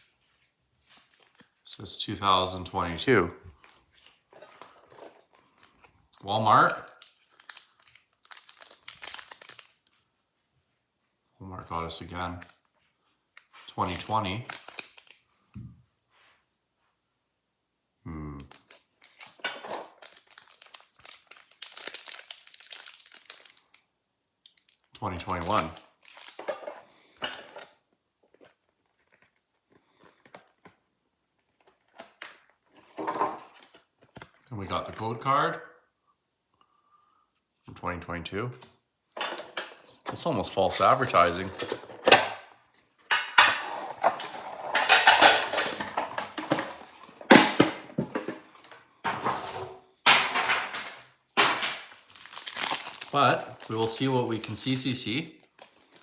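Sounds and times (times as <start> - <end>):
faint ticks and packaging crinkles: 0.0 - 1.6, 6.9 - 10.1, 12.4 - 15.4, 18.5 - 19.4, 20.0 - 26.5, 55.4 - 56.0
packaging rustling and crinkling: 0.0 - 1.6, 3.5 - 6.0, 6.8 - 10.0, 13.4 - 15.2, 18.5 - 23.8, 24.6 - 30.8, 31.4 - 34.4, 40.7 - 56.0
metal tins clattering: 43.1 - 48.5.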